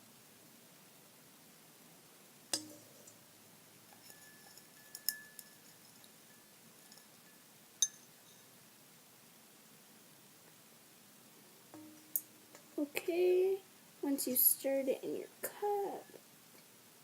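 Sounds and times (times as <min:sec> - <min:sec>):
utensil clinking against a cup: 0:03.9 - 0:08.5.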